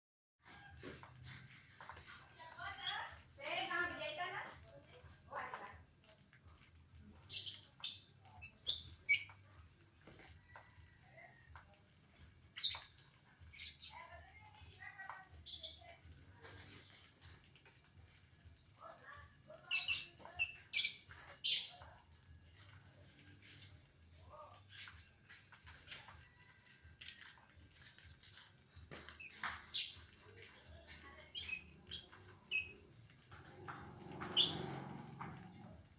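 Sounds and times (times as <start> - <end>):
bird eating clicks and scratches: 0.4 - 35.9
bird high-pitched chirps: 7.2 - 9.4, 12.6 - 14.1, 15.3 - 16.0, 19.6 - 21.8, 29.1 - 30.2, 31.2 - 32.8.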